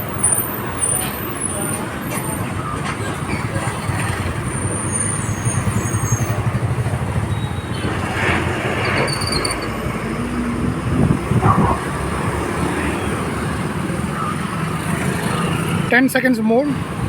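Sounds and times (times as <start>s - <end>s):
vehicle traffic rumble: 0.0s - 17.0s.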